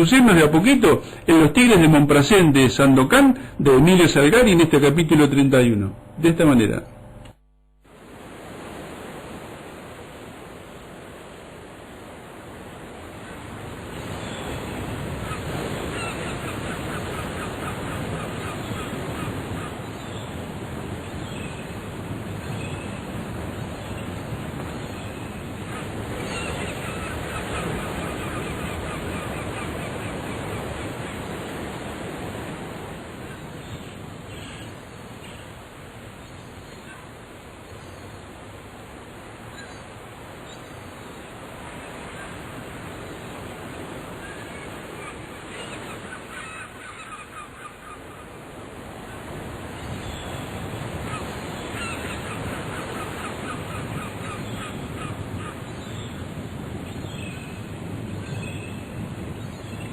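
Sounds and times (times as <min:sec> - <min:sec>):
ocean waves washing: 0:00.0 - 0:06.8, 0:07.9 - 0:58.3
birds honking and calling: 0:13.9 - 0:20.4, 0:23.8 - 0:32.5, 0:43.4 - 0:48.5, 0:49.1 - 0:56.3.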